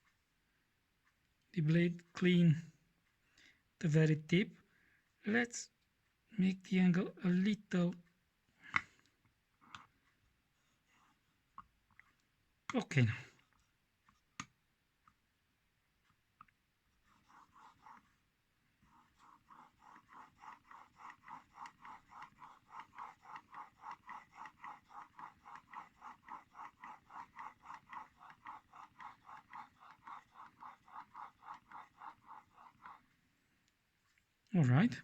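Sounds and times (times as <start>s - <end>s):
plane blade scraping on waterstone: 18.9s - 33.0s.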